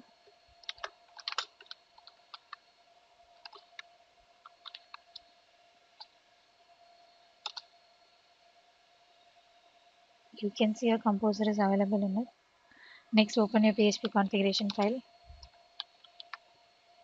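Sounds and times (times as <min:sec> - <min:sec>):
faint steady hum: 0:00.0 - 0:17.0
keyboard keystrokes typing: 0:00.6 - 0:02.6, 0:03.4 - 0:05.3, 0:07.4 - 0:07.7, 0:13.8 - 0:16.4.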